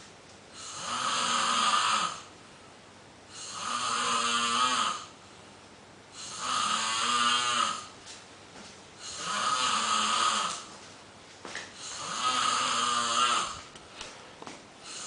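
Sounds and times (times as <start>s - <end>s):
person snoring: 0.6s - 2.3s, 3.3s - 5.1s, 6.2s - 7.9s, 9.0s - 10.7s, 11.8s - 13.6s.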